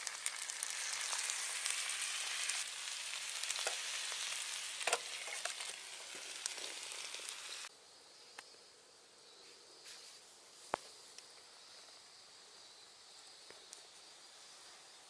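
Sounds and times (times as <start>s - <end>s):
food sizzling in a frying pan: 0.0s - 7.7s
insects chirring: 0.0s - 15.0s.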